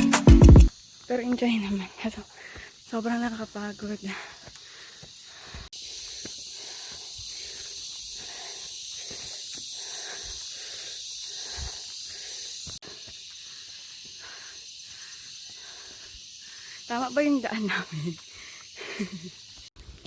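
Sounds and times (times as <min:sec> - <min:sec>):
insects hissing: 0:00.6 - 0:20.0
person panting heavily: 0:02.2 - 0:02.9, 0:04.0 - 0:16.9, 0:17.7 - 0:19.5.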